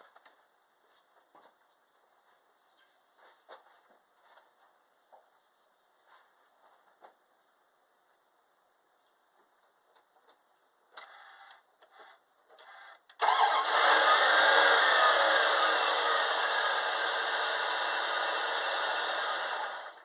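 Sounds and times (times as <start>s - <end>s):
engine starter cranking: 12.6s - 20.0s
engine running: 13.2s - 20.0s.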